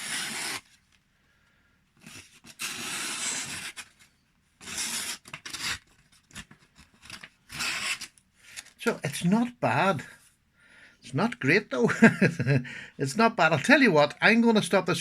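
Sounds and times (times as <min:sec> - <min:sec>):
knife slicing paper: 0:00.0 - 0:00.7, 0:02.0 - 0:04.0.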